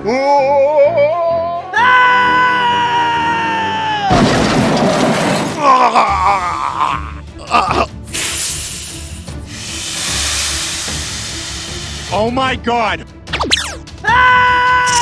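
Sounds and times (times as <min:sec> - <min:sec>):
loud crash with shattering: 0:04.0 - 0:06.0.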